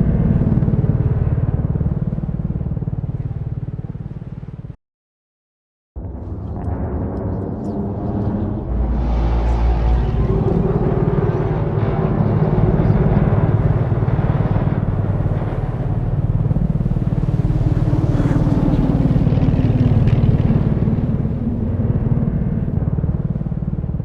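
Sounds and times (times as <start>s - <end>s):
deep throbbing engine rumble: 0.0s - 4.8s, 6.0s - 24.0s
faint rising tone: 6.0s - 22.8s.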